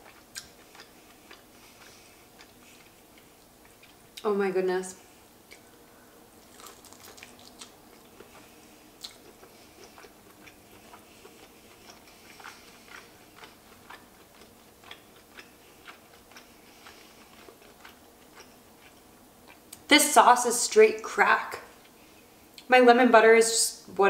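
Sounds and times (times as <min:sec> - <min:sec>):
wet chewing mouth clicks: 0:00.0 - 0:04.3, 0:06.4 - 0:19.8.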